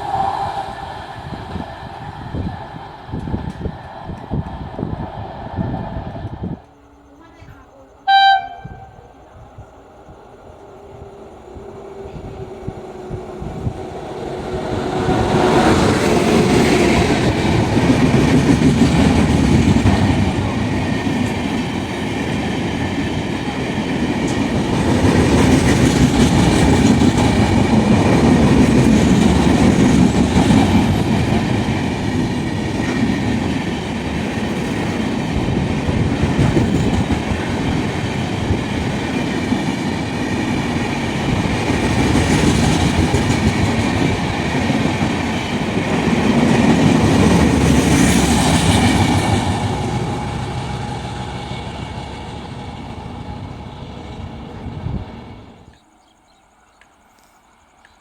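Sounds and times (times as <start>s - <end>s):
train wheels clattering on rails: 11.5s - 55.8s.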